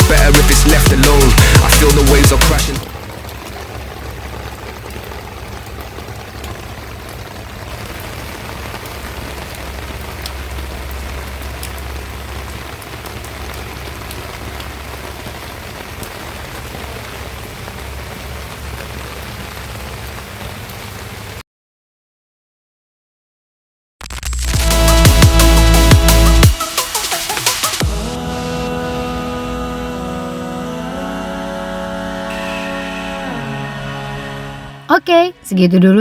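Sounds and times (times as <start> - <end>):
steady rain patter: 0.0 - 21.4, 24.4 - 31.4.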